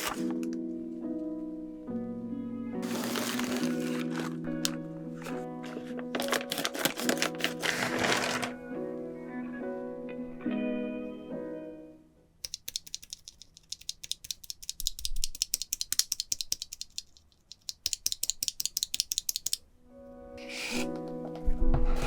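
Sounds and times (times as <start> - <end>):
plastic keyboard switches clicking: 12.4 - 19.6.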